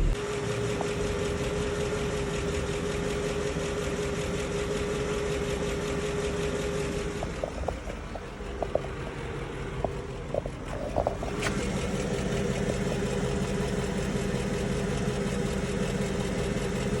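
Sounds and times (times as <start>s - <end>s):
car engine running: 0.0s - 17.0s
engine ticking: 0.0s - 17.0s.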